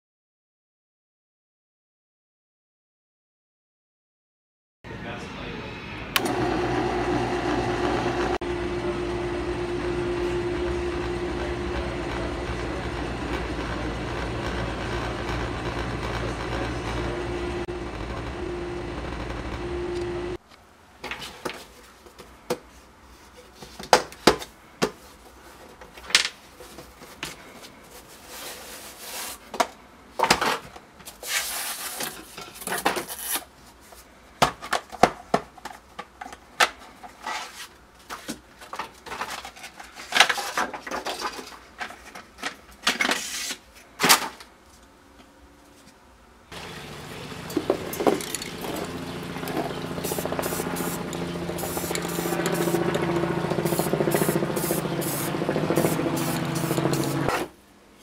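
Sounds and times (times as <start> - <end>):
steady hum: 5.0 - 20.4, 46.3 - 57.5.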